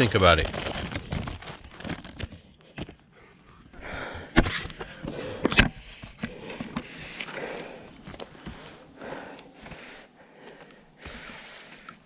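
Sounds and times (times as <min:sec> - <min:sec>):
person breathing hard: 0:03.1 - 0:12.0.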